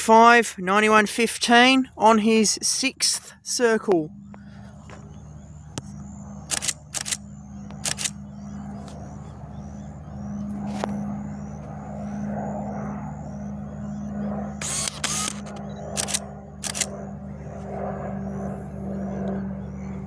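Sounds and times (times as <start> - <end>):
propeller plane droning: 0.0 - 20.0
camera shutter bursts: 6.4 - 7.2, 7.8 - 8.2, 14.6 - 16.9.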